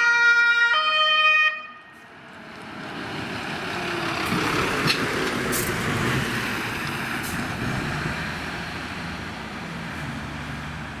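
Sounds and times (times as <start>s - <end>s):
road noise: 0.0s - 11.0s
vehicle engine hum: 2.0s - 11.0s.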